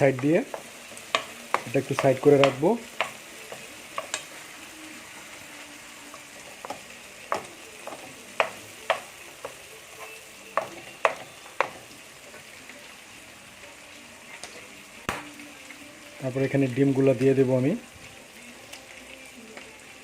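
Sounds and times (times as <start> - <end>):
spatula clacking on a pan: 0.0 - 4.4, 6.2 - 12.4
vegetables sizzling in a pan: 0.0 - 20.0.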